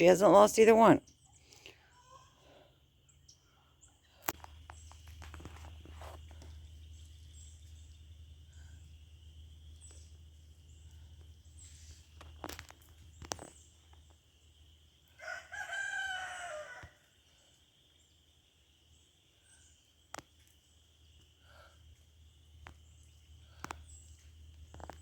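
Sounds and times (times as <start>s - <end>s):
rooster crowing: 15.2s - 17.1s
faint sharp clicks: 23.5s - 25.0s.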